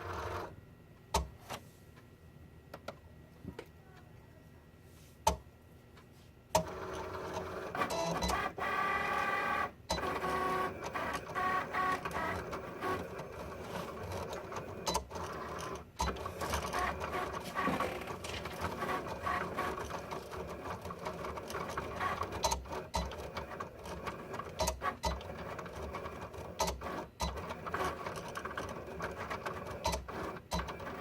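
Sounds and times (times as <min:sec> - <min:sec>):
cutting machine whirring and clicking: 0:06.6 - 0:31.0.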